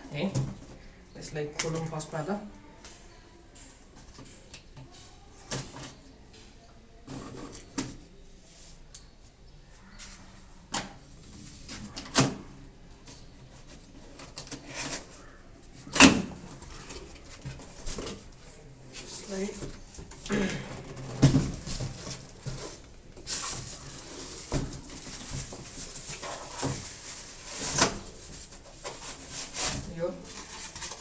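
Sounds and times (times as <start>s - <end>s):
cardboard scraping and rustling: 18.9s - 31.0s.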